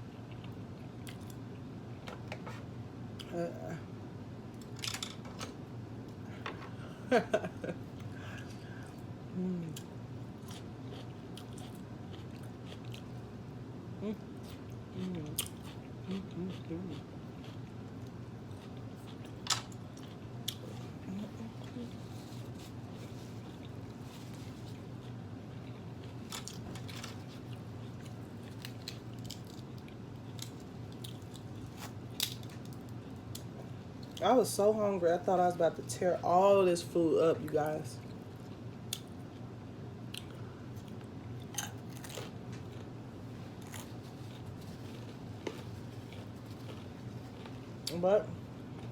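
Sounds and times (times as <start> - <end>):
steady low hum: 0.0 - 48.9
person humming: 9.3 - 9.9, 14.0 - 14.2, 16.1 - 17.0, 21.0 - 22.0
person chewing food: 9.5 - 13.4, 14.0 - 34.2, 40.1 - 48.0.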